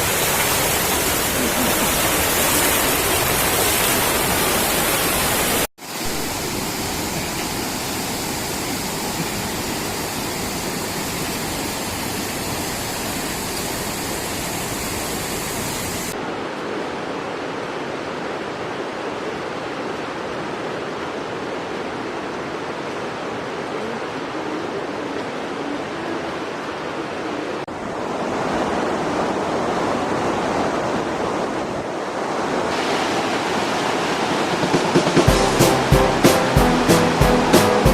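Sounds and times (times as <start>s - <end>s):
waterfall roaring: 0.0s - 37.9s.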